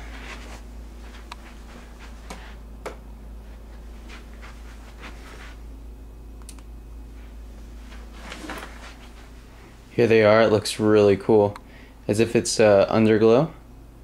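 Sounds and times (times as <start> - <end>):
switch clicking: 6.4 - 6.7.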